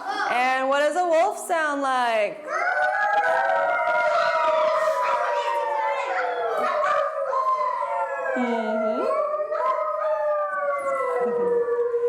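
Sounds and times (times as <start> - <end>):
children howling like wolves: 2.4 - 12.0.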